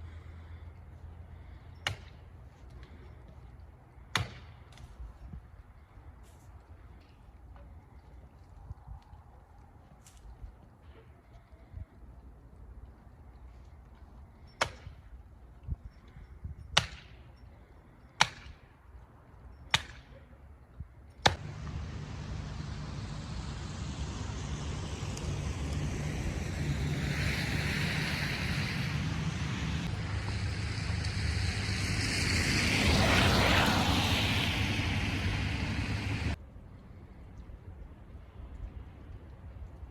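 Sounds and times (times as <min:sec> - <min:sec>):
road and wind noise: 0:00.0 - 0:39.9
car engine hum: 0:21.4 - 0:36.4.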